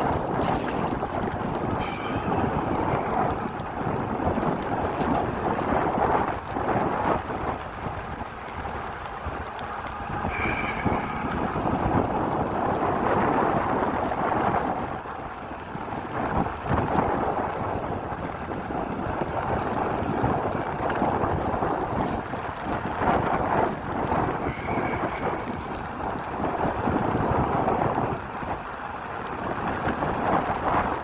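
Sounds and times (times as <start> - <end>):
rain falling: 0.0 - 31.0
wind buffeting microphone: 0.0 - 31.0
brief high squeal: 10.2 - 11.6.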